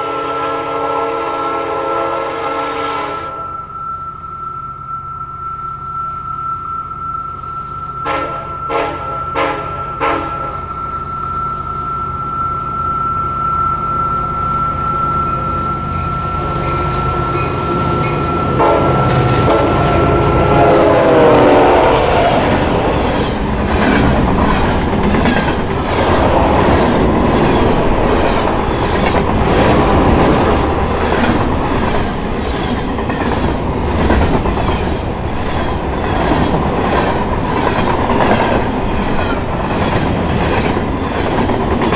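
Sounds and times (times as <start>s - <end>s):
train horn: 0.0s - 32.0s
steady high tone: 2.4s - 41.9s
train wheels clattering on rails: 13.6s - 41.9s.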